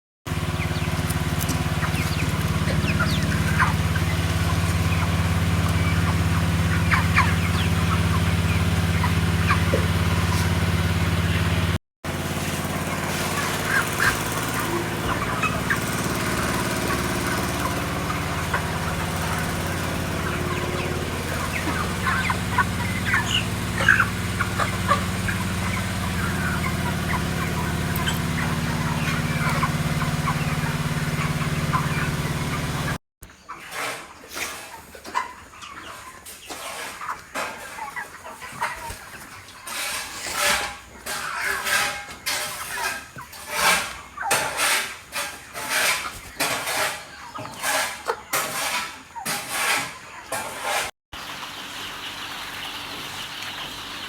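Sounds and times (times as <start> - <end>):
low mechanical hum: 0.3 - 33.0
poultry clucking: 0.3 - 54.0.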